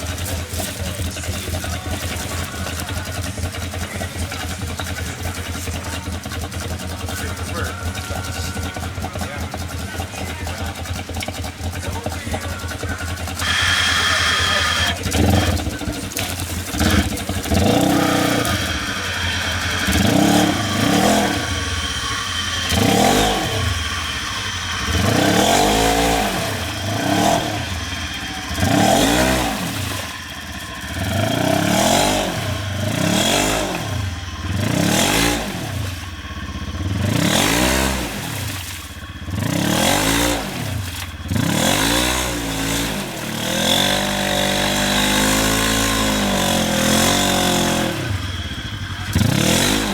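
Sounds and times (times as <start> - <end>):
utv engine revving: 0.0 - 49.9.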